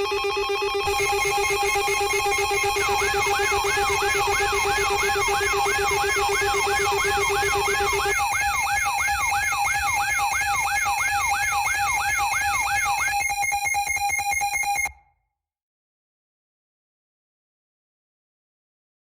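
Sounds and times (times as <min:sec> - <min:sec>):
electronic alarm siren sweeping: 0:00.0 - 0:14.9
rapid pulsing beeps: 0:00.0 - 0:14.9
steady high tone: 0:00.0 - 0:14.9.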